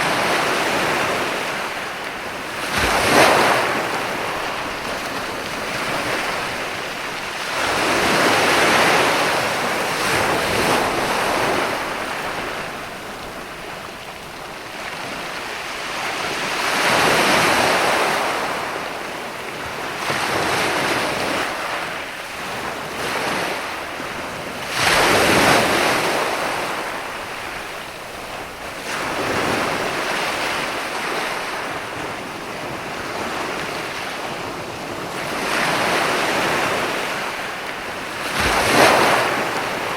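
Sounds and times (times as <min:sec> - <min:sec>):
waves breaking: 0:00.0 - 0:39.9.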